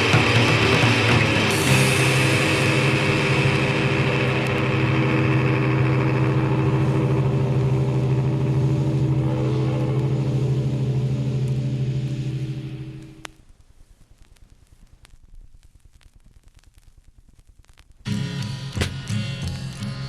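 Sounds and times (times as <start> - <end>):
distorted guitar drone: 0.0 - 13.3, 18.0 - 20.0
hiss: 1.4 - 4.5.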